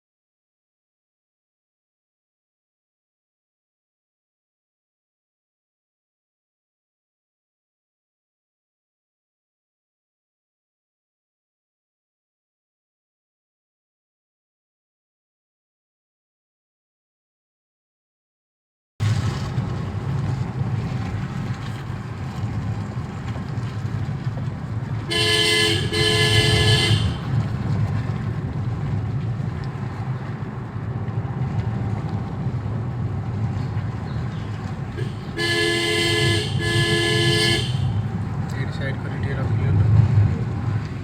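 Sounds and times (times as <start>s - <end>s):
vehicle engine and road rumble: 19.0s - 41.0s
vehicle horn toots: 25.1s - 27.3s, 34.9s - 38.0s.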